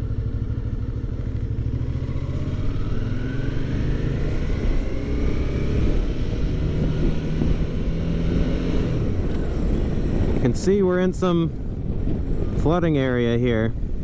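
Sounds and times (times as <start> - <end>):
motorcycle engine accelerating: 0.0 - 10.6.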